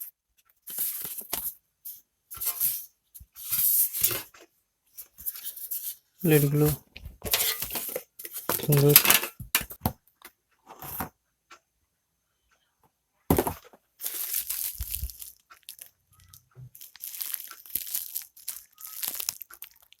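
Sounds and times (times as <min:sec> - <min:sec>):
cardboard rustling: 0:05.0 - 0:09.6
plastic wrap crinkling: 0:14.0 - 0:20.0.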